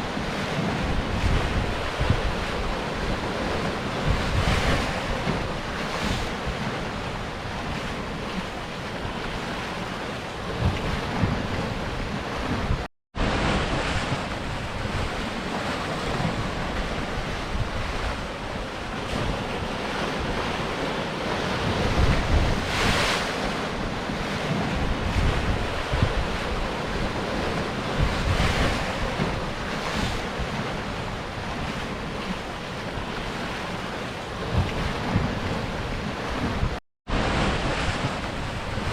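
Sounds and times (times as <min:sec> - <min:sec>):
wind rumbling on microphone: 0:00.0 - 0:38.9
surf breaking on rocks: 0:33.1 - 0:38.9.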